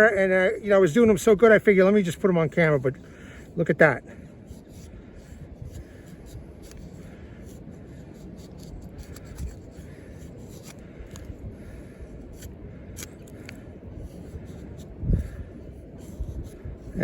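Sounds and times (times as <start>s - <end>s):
knife scraping wooden stick: 4.4s - 11.4s, 12.3s - 17.0s.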